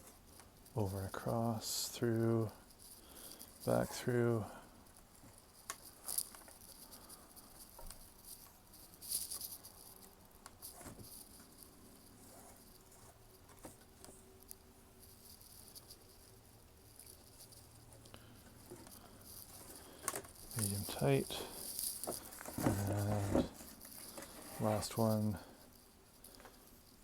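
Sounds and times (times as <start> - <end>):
string rustling through wood: 0.0 - 27.0.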